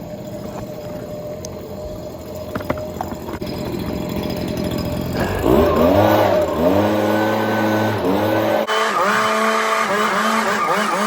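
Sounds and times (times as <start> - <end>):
leaf blower engine revving: 0.0 - 11.0.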